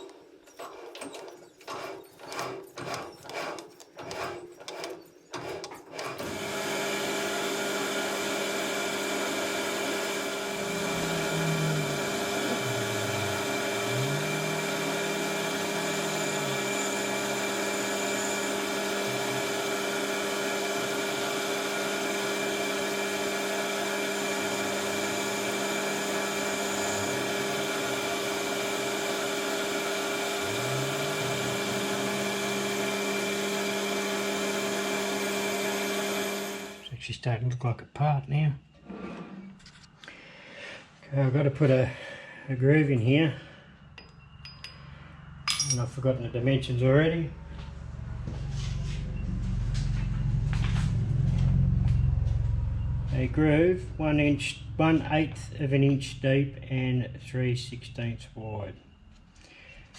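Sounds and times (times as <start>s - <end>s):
metal lathe humming: 0.0s - 36.8s, 47.3s - 56.9s.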